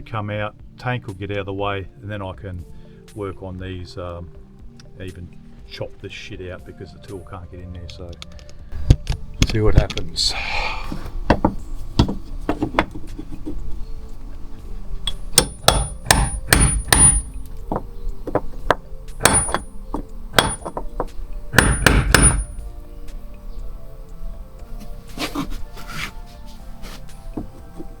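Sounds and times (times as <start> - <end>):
hammer tapping chisel on metal: 15.0 - 22.6.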